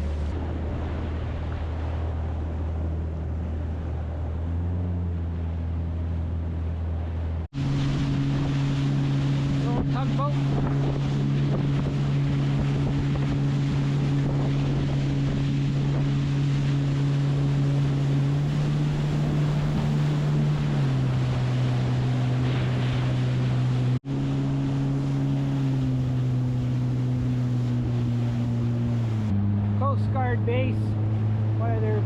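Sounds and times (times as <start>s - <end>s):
personal watercraft engine running: 0.0s - 32.0s
water rushing: 0.0s - 32.0s
wind noise on microphone: 7.6s - 25.0s.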